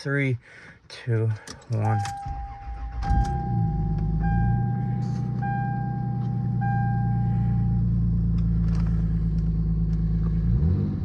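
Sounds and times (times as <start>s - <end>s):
car engine idling: 1.3s - 11.0s
car warning chime: 1.6s - 8.0s.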